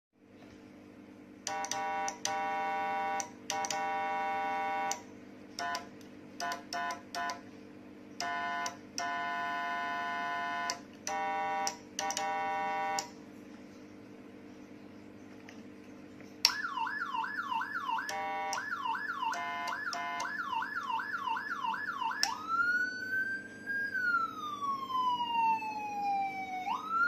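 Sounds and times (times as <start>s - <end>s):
low electrical hum: 0.2s - 27.0s
buzzy electronic siren bursts: 1.5s - 5.0s, 8.2s - 13.1s, 16.5s - 27.0s.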